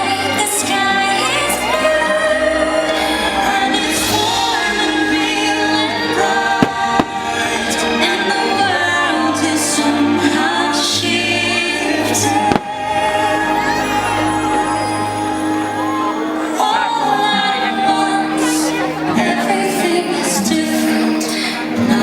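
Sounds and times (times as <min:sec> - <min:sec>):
orchestral music with choir: 0:00.0 - 0:22.0
firework bangs: 0:06.4 - 0:07.9, 0:12.3 - 0:13.2.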